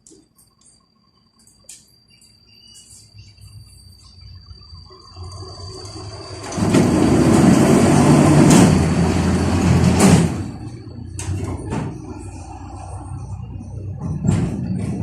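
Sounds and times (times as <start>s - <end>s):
folding doors shutting with bang: 6.4s - 12.0s.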